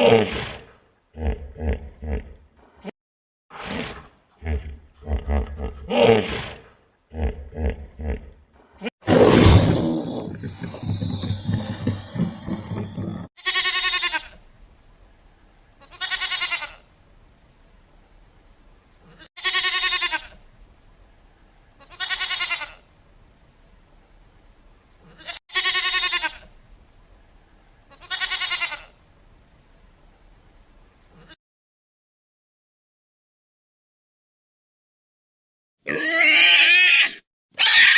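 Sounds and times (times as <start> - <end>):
farm animal bleating: 13.4 - 14.4, 15.8 - 16.8, 19.1 - 20.4, 21.8 - 22.9, 25.0 - 26.5, 27.9 - 29.0, 31.1 - 31.4, 35.9 - 37.9.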